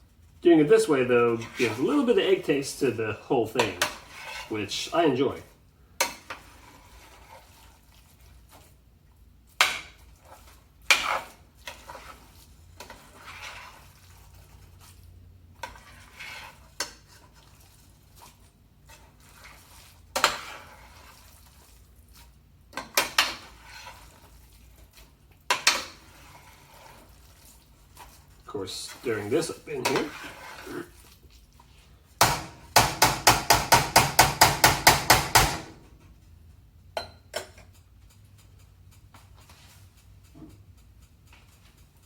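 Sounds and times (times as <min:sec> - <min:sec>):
utensil scraping frying pan: 0:00.4 - 0:36.0, 0:37.4 - 0:42.0
utensil clanking on frying pan: 0:03.6 - 0:04.5, 0:06.0 - 0:06.6, 0:09.6 - 0:10.1, 0:10.8 - 0:12.1, 0:20.1 - 0:20.9, 0:22.7 - 0:23.9, 0:25.4 - 0:27.0, 0:32.2 - 0:35.9.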